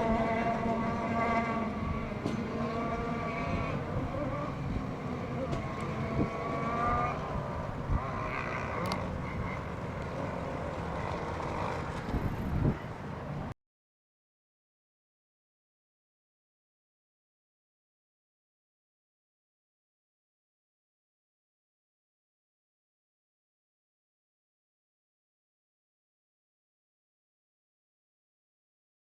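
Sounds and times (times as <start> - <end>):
model boat engines running: 0.0 - 13.5.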